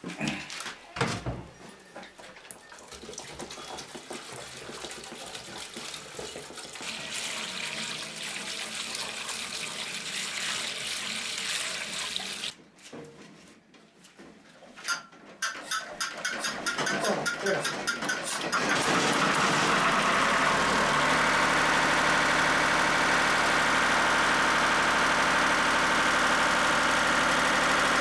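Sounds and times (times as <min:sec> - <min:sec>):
water pouring from a pipe: 0:02.6 - 0:12.6, 0:19.2 - 0:28.0.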